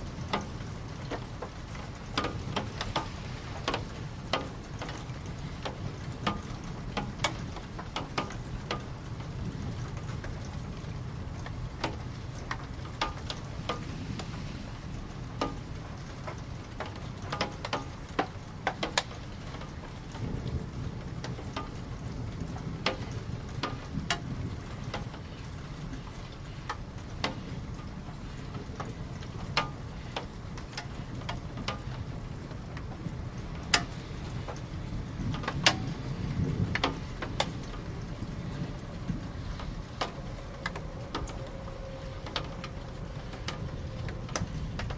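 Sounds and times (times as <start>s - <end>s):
raindrops tapping on hard surface: 0.0s - 44.9s
low steady rumble: 19.2s - 44.9s.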